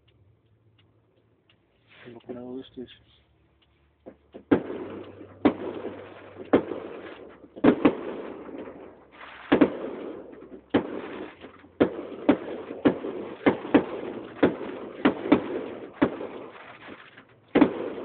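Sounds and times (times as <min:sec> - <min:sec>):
fireworks bangs: 0:04.1 - 0:18.0
fireworks hiss: 0:09.1 - 0:09.8.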